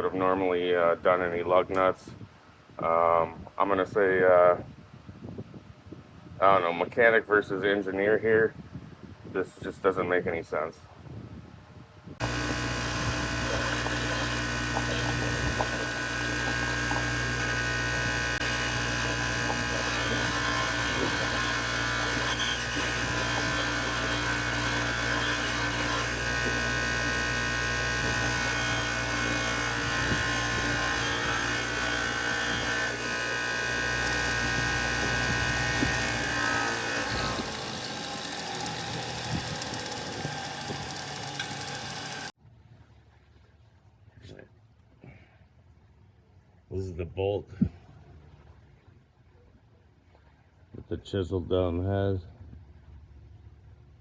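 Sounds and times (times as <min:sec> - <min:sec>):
power grinder cutting metal: 0:12.2 - 0:42.3.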